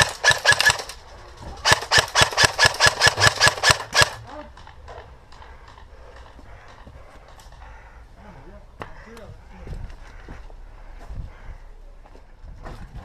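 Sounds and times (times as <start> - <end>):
airsoft gun shots: 0.0 - 1.0, 1.6 - 4.2.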